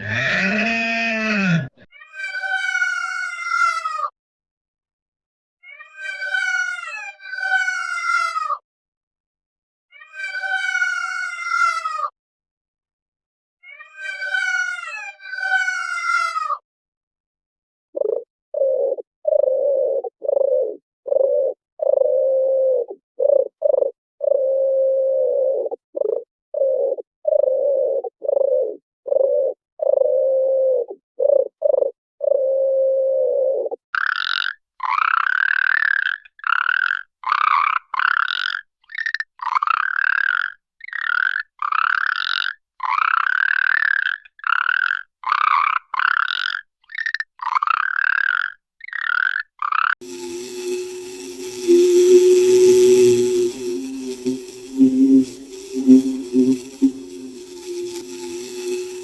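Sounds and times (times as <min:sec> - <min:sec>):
rasping croak-like animal calls: 0:00.0 - 0:01.9, 0:33.4 - 0:59.0
pigeon cooing: 0:18.0 - 0:33.8, 0:50.0 - 0:59.0.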